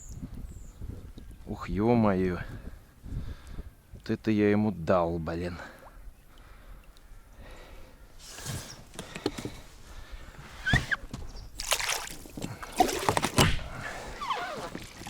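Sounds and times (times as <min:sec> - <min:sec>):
brief squeaks: 0:10.6 - 0:11.0
water sloshing and splashing: 0:10.6 - 0:15.0.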